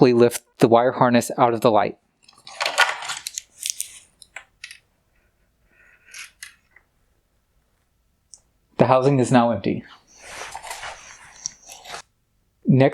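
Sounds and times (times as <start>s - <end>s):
plastic scraping on plastic: 9.9s - 12.1s.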